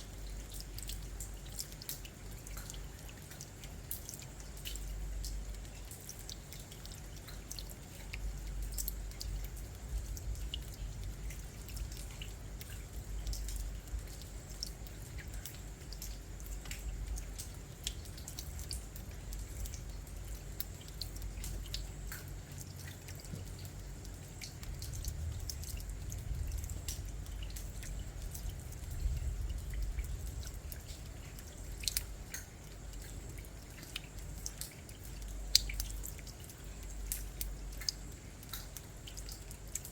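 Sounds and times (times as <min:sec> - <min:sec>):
rain drips and patters: 0:00.0 - 0:39.9
steady low rumble: 0:08.0 - 0:33.6.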